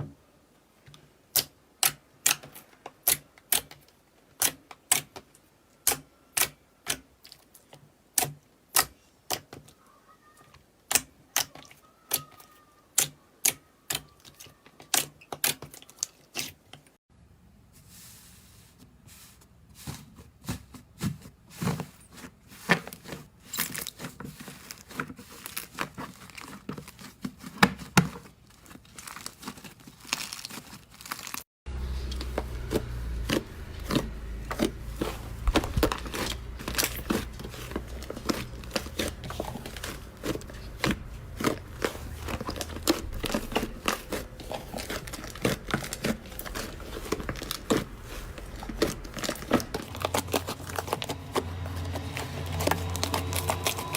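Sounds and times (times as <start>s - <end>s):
slime crackling and popping: 28.6s - 53.9s.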